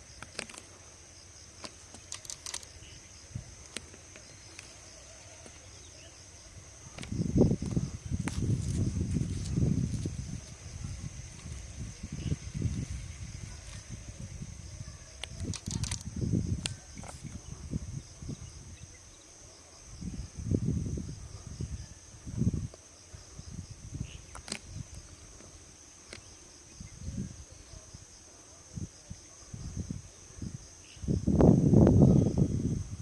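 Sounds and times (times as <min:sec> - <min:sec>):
insects chirring: 0:00.0 - 0:33.0
sharp clicks: 0:01.6 - 0:02.8, 0:15.2 - 0:16.8.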